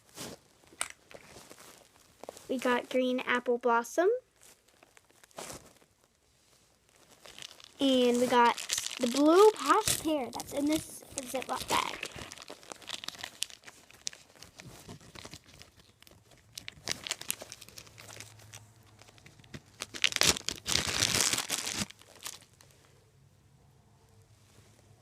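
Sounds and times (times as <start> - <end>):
plastic bag crinkling: 4.3 - 6.1, 6.8 - 22.8.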